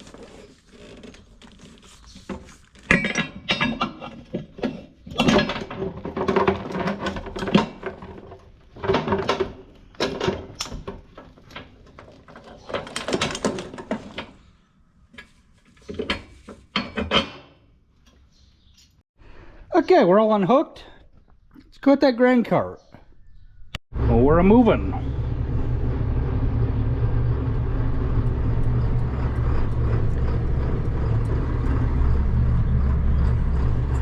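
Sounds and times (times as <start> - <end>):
metal clanking and rattling: 2.8 - 14.5.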